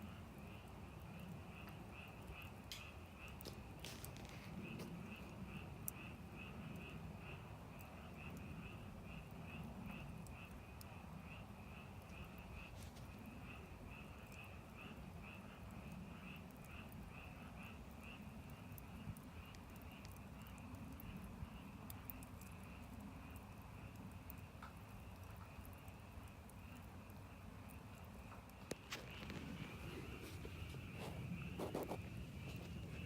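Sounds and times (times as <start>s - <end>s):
wood fire crackling: 0.0s - 33.0s.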